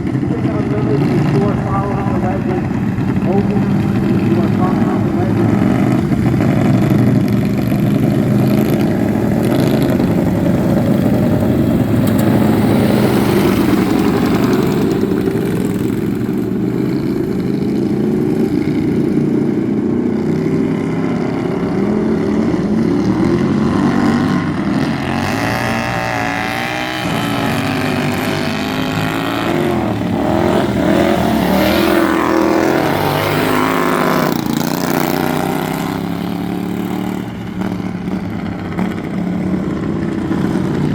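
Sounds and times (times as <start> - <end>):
lawn mower engines revving: 0.0 - 40.9.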